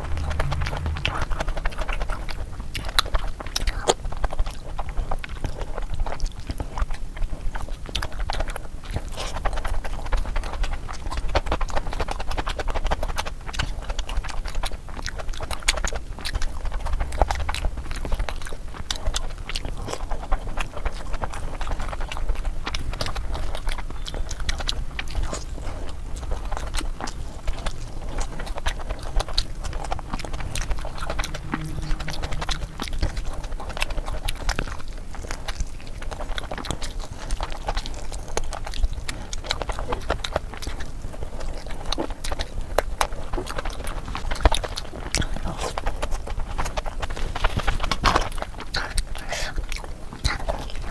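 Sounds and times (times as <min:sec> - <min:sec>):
person chewing wetly: 0:02.7 - 0:50.9
mouth clicks and smacks: 0:47.7 - 0:50.9.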